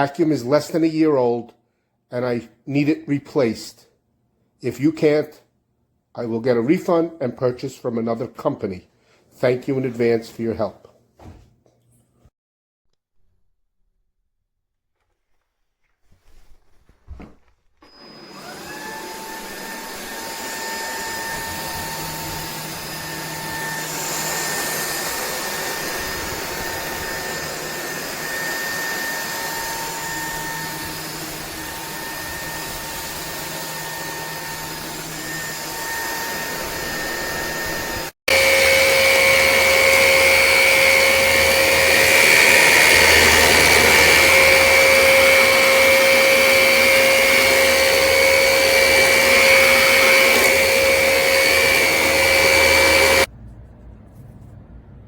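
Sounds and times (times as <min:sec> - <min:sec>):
vacuum motor high whine: 0:17.8 - 0:53.3
louder vacuum lower whine: 0:17.8 - 0:53.7.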